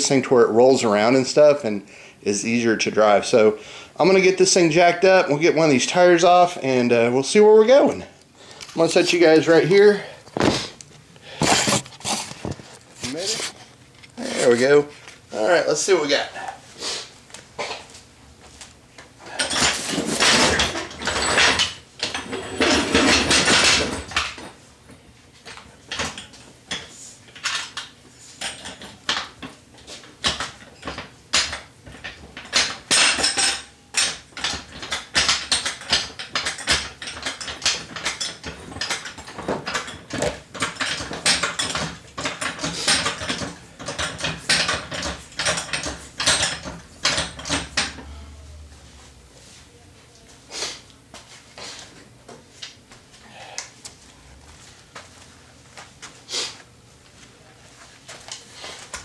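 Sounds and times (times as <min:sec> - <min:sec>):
metal tools clinking against hub: 0:30.7 - 0:48.2.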